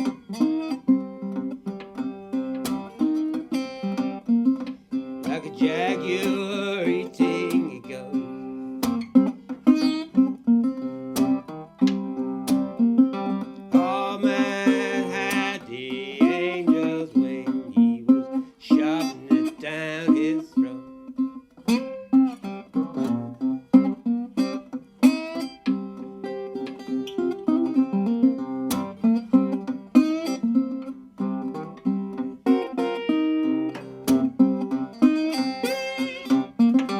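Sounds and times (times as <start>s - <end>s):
slide guitar blues: 0.0s - 36.9s.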